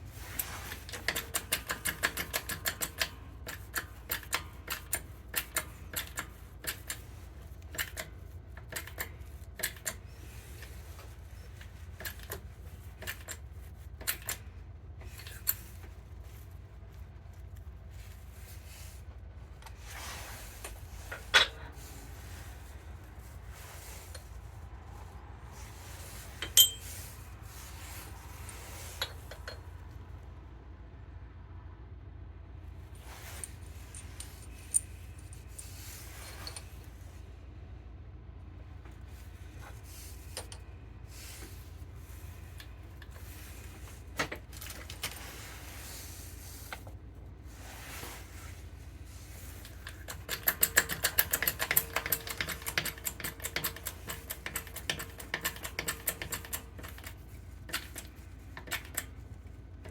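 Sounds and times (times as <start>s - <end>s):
small metal parts clicking: 0.3s - 14.4s, 26.1s - 29.7s, 33.3s - 36.8s, 49.6s - 59.9s.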